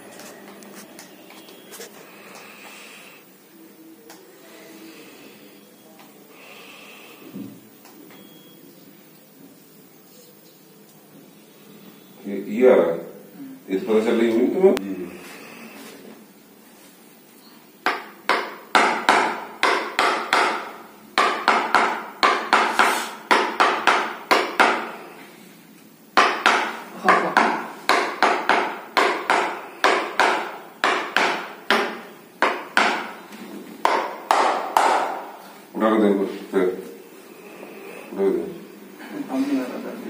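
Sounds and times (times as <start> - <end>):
sharp percussive knocks: 33.8 - 35.4.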